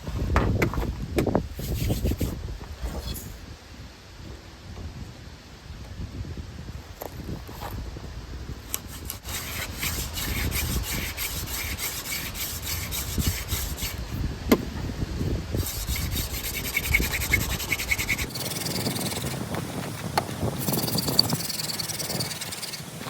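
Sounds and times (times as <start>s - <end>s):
hand drill rasping in wood socket: 15.6s - 23.0s.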